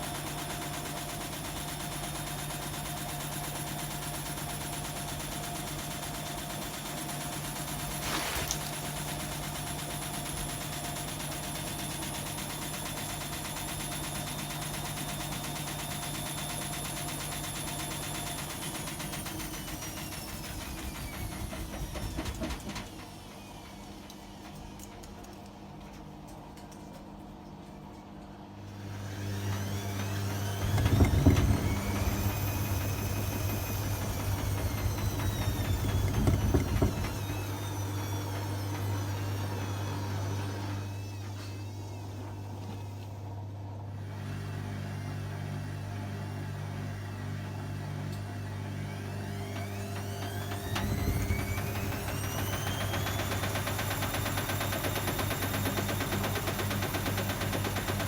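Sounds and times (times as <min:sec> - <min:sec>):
washing machine motor whining: 0:00.0 - 0:24.4, 0:28.6 - 0:43.2, 0:43.9 - 0:58.0
drum knocking heavily: 0:30.6 - 0:37.4.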